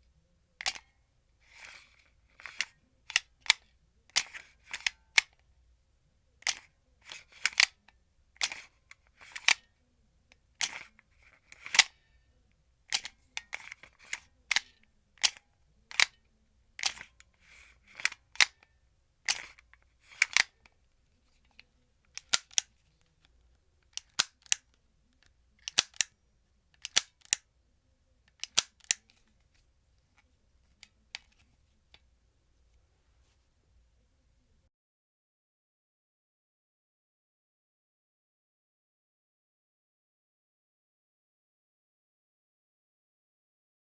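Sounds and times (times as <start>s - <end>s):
pistol slide clacking: 0.6s - 0.9s, 4.2s - 5.4s, 6.4s - 7.8s, 8.4s - 9.6s, 10.6s - 11.9s, 16.8s - 18.6s, 19.3s - 20.5s, 22.2s - 22.7s, 23.9s - 24.6s, 25.6s - 26.1s, 26.8s - 27.4s, 28.3s - 29.2s
magazine clicking in and out: 0.6s - 5.4s, 6.4s - 9.7s, 10.6s - 12.0s, 12.9s - 16.2s, 16.8s - 20.6s, 21.2s - 23.2s, 23.9s - 24.7s, 25.6s - 26.2s, 26.8s - 27.4s, 28.3s - 29.2s.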